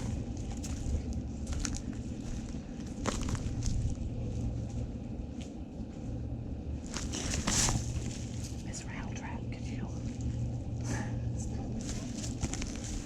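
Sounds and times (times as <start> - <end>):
footsteps crunching on debris: 0.0 - 6.0, 6.8 - 8.6, 11.8 - 13.0
steady low rumble: 0.0 - 13.0.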